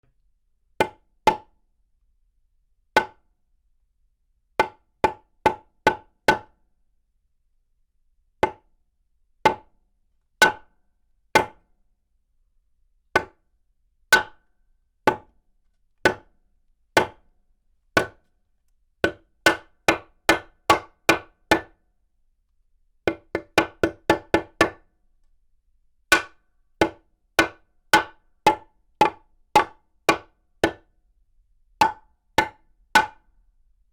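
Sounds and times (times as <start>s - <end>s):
hammer striking wood: 19.1s - 21.7s, 26.1s - 30.8s, 31.8s - 33.2s.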